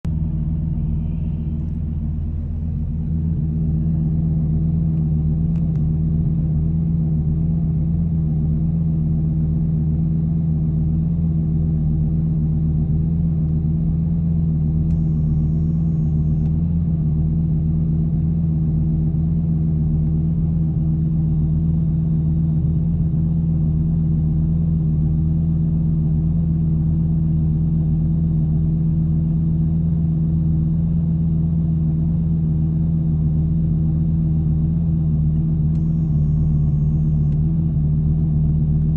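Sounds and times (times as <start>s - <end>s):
car engine idling: 0.0s - 7.8s, 14.8s - 17.8s, 35.4s - 38.9s.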